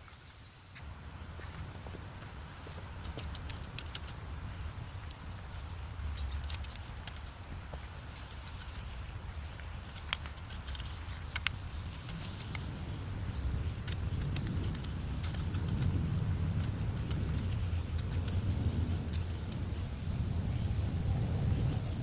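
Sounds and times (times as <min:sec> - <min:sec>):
light clicks and taps: 0:06.1 - 0:12.7, 0:13.8 - 0:16.0, 0:16.6 - 0:19.7
low rumble: 0:11.5 - 0:22.0.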